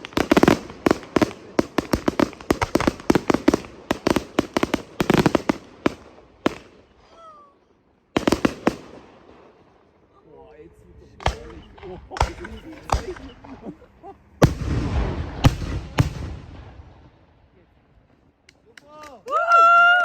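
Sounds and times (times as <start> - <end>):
fireworks exploding: 0.0 - 7.4, 8.1 - 10.0, 11.1 - 17.5.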